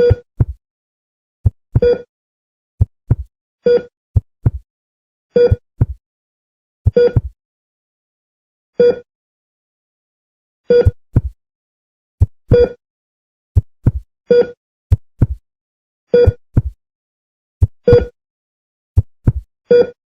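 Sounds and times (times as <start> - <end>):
heart-rate monitor beeps: 0.0 - 0.6, 1.4 - 2.1, 2.8 - 4.6, 5.3 - 6.0, 6.9 - 7.4, 8.8 - 9.1, 10.7 - 11.4, 12.2 - 12.8, 13.8 - 14.6, 15.2 - 15.4, 16.2 - 16.8, 17.6 - 18.2, 19.0 - 20.0
heartbeat thumps: 0.1 - 0.6, 1.4 - 2.0, 2.8 - 3.3, 4.2 - 4.6, 5.5 - 6.0, 6.9 - 7.4, 10.8 - 11.4, 12.2 - 12.8, 13.6 - 14.1, 14.9 - 15.4, 16.3 - 16.8, 17.6 - 18.2, 19.0 - 19.5.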